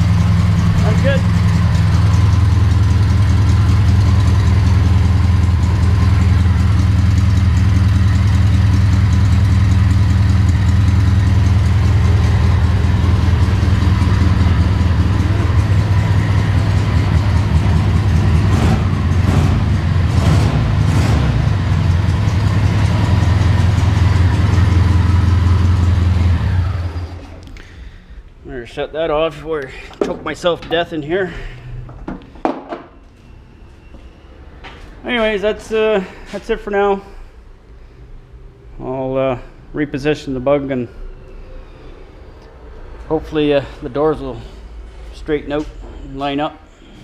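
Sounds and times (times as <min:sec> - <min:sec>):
car engine idling: 0:00.0 - 0:28.4.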